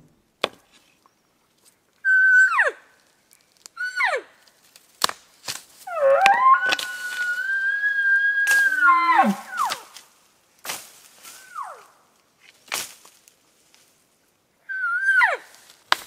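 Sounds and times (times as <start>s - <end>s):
elk bugling whistle: 2.0s - 2.7s, 5.9s - 9.8s, 11.4s - 11.9s, 14.7s - 15.4s.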